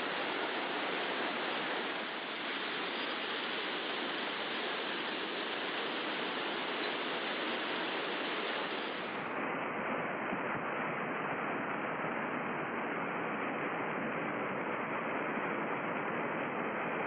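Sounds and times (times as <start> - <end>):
waterfall rushing: 0.0 - 9.1.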